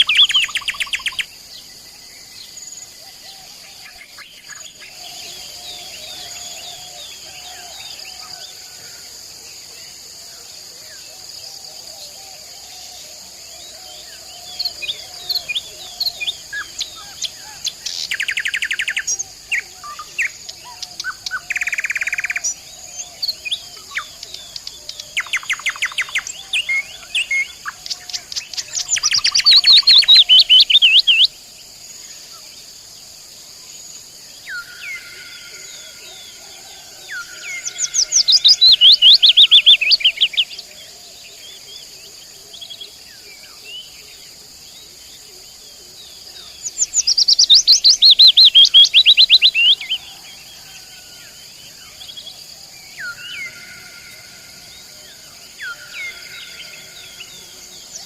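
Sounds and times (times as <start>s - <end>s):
nightingale singing: 0.0s - 8.6s, 13.6s - 31.4s, 34.4s - 44.1s, 44.8s - 58.0s
high insect hum: 0.0s - 58.0s.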